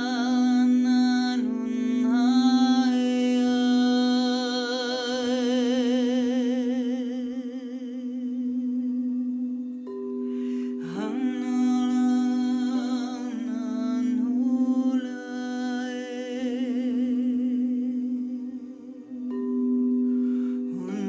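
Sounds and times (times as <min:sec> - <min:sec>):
singing bowls ringing: 0:00.0 - 0:21.0
person humming with vibrato: 0:10.6 - 0:21.0.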